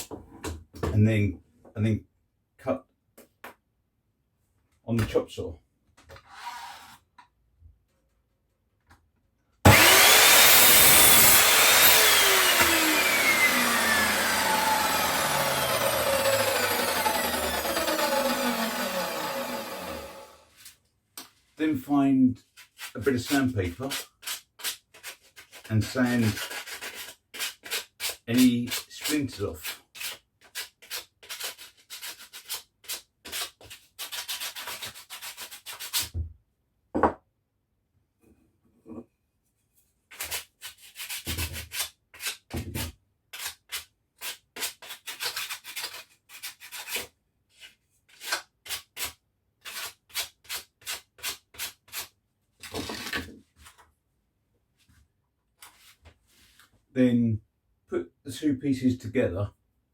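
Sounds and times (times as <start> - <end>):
electric chop saw cutting wood: 9.7 - 20.4.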